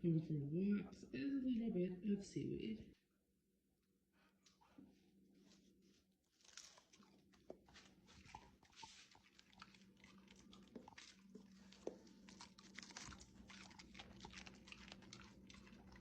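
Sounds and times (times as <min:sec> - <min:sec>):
dog chewing crunchy food: 0:06.3 - 0:16.0.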